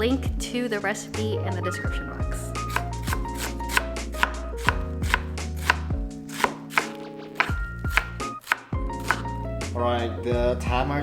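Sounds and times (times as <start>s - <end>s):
music with bass chords: 1.2s - 6.3s.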